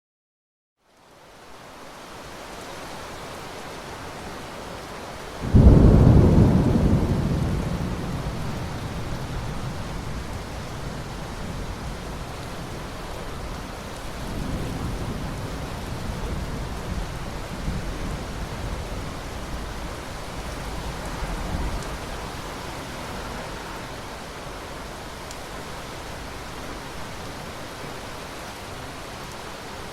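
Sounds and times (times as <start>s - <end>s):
steady rain hiss: 0.8s - 29.9s
thunder rumbling: 5.4s - 23.6s.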